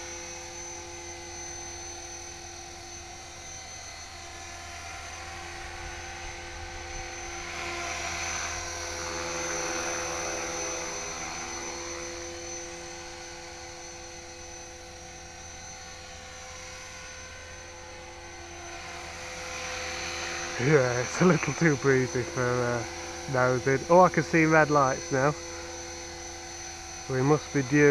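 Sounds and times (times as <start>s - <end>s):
rc helicopter motor whine: 0.0s - 27.9s
rotors humming: 18.3s - 25.9s.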